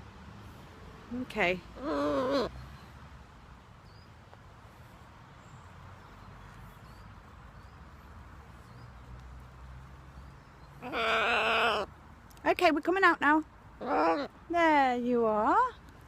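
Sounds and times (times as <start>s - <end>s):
small birds chirping: 3.7s - 16.0s.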